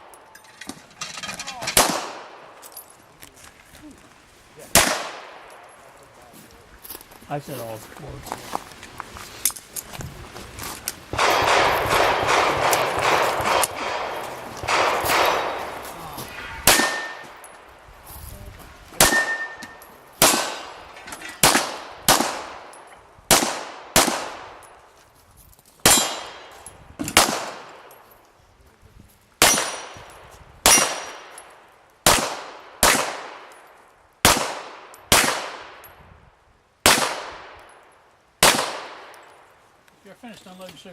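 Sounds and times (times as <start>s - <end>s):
pistol shots with echo: 1.7s - 2.5s, 4.7s - 5.6s, 11.1s - 15.8s, 16.4s - 17.7s, 19.0s - 20.8s, 21.4s - 24.6s, 25.8s - 26.5s, 27.1s - 27.9s, 29.4s - 30.0s, 30.6s - 31.4s, 32.0s - 33.6s, 34.2s - 35.9s, 36.8s - 37.6s, 38.4s - 39.2s
steel target ringing: 16.3s - 17.6s, 19.0s - 19.9s.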